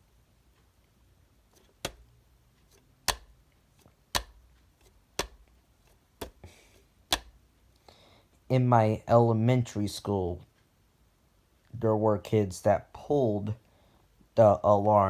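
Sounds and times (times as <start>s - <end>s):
sharp regular clicks: 1.5s - 6.5s, 7.1s - 7.8s.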